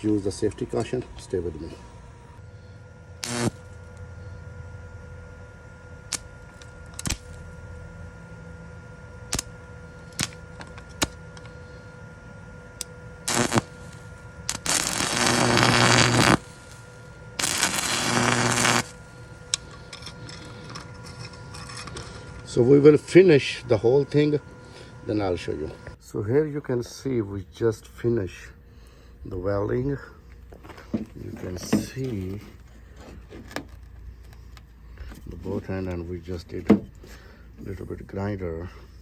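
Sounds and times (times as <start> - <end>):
faint hum: 0.0 - 39.0
welding arc crackle: 3.2 - 4.1, 5.9 - 7.9, 9.2 - 11.6, 12.7 - 23.3.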